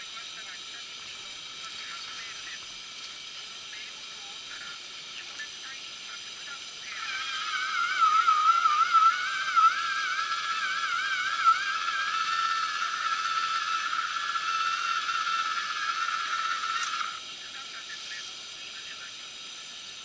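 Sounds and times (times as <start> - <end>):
loud wavering whistling tone: 6.8 - 17.2.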